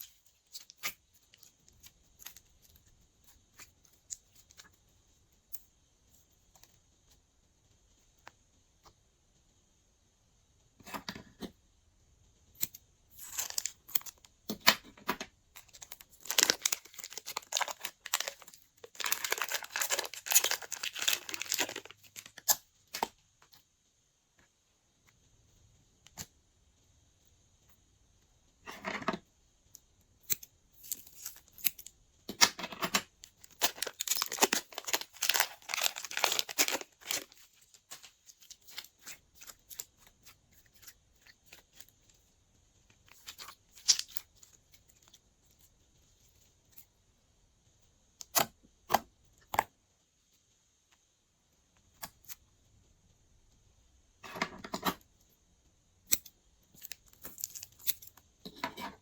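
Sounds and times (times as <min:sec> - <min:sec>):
slime crackling and popping: 0:15.5 - 0:23.1, 0:33.3 - 0:41.9.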